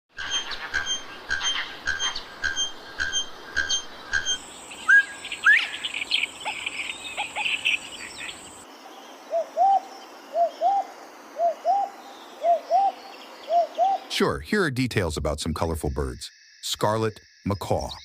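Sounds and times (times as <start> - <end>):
bird chattering: 0.2 - 8.6
low hooting bird calls: 0.2 - 14.2
high insect-like whine: 0.5 - 14.2
rising bird whistles: 3.1 - 6.3.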